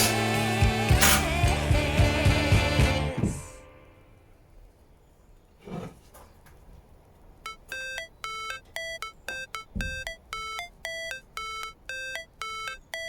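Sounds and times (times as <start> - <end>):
synth riff of beeping notes: 7.5 - 13.0.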